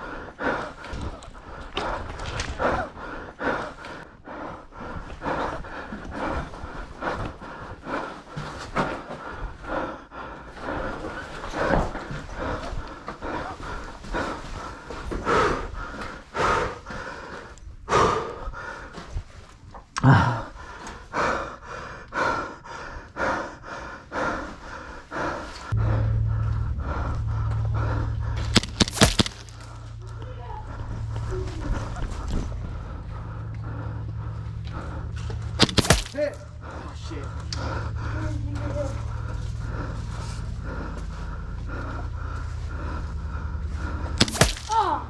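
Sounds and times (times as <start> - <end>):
heavy rhythmic breathing: 0.0 - 45.0
steady low hum: 21.8 - 45.0
sharp loud crack: 35.6 - 36.4.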